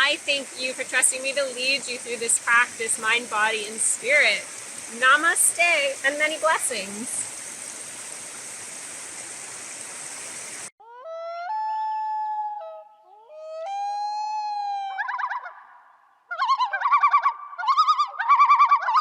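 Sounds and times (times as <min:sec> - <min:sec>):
river rushing: 0:00.0 - 0:10.7
bird calling: 0:14.8 - 0:19.0.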